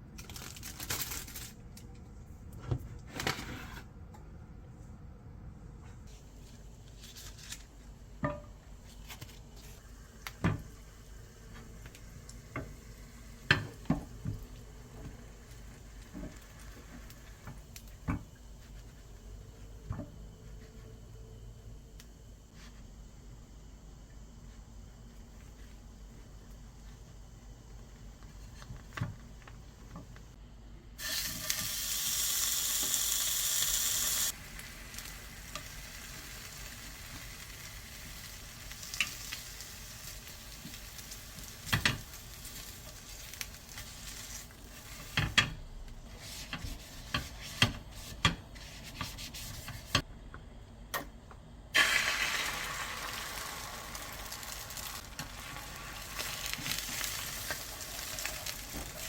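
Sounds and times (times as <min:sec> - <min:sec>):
food sizzling in a frying pan: 0:31.0 - 0:45.3, 0:51.8 - 0:59.0.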